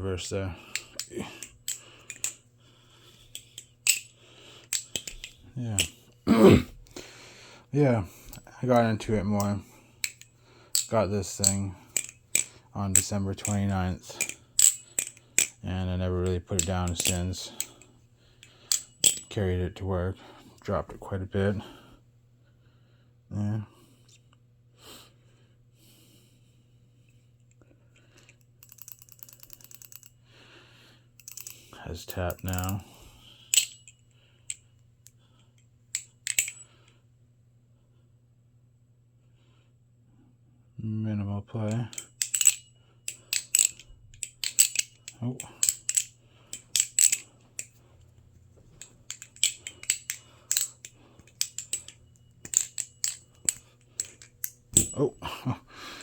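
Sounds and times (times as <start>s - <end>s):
butterfly knife handles clacking: 0.6s - 6.0s, 8.2s - 19.4s, 28.2s - 30.1s, 31.2s - 34.6s, 35.9s - 36.8s, 41.7s - 55.5s.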